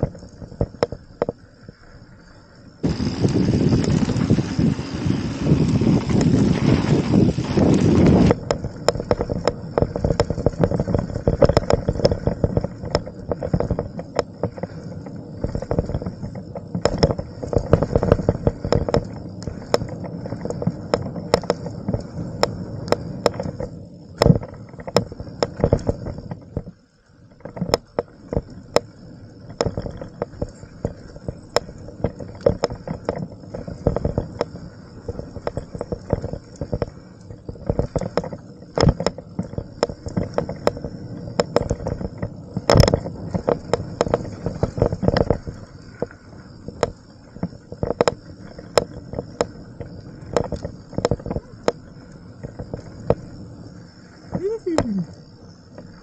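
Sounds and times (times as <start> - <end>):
faint high whine: 0.0 - 8.9
bike rattling over bumps: 0.0 - 56.0
bike tyres rolling over dirt: 0.0 - 56.0.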